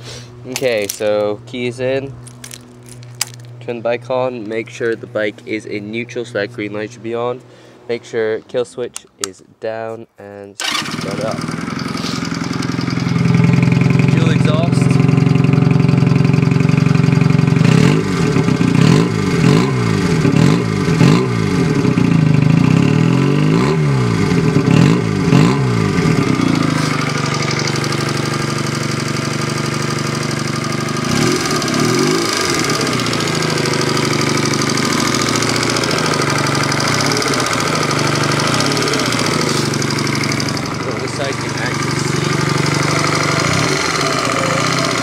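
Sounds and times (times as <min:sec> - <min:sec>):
motorcycle engine revving and idling: 0:10.6 - 0:45.0.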